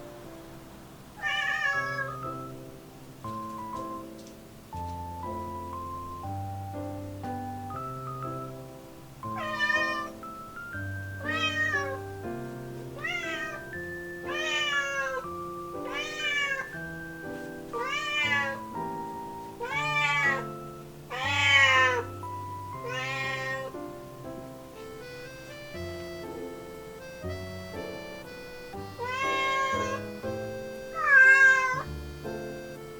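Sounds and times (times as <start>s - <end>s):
background music: 0.0s - 32.9s
young cat meowing: 1.2s - 2.5s, 9.3s - 10.2s, 11.2s - 12.0s, 13.0s - 13.7s, 14.3s - 16.8s, 17.8s - 18.7s, 19.6s - 23.8s, 28.9s - 30.2s, 30.9s - 31.9s.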